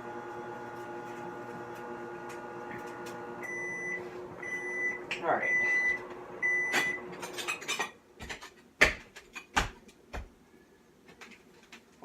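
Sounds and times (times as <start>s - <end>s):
microwave running hum: 0.0s - 7.6s
microwave beep: 0.1s - 7.2s.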